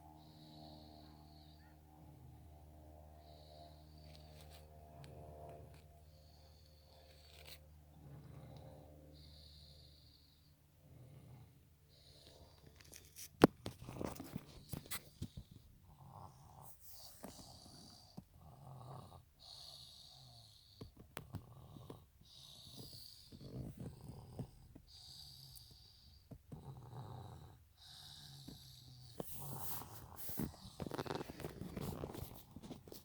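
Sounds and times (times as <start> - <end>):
person snoring: 21.4 - 32.5.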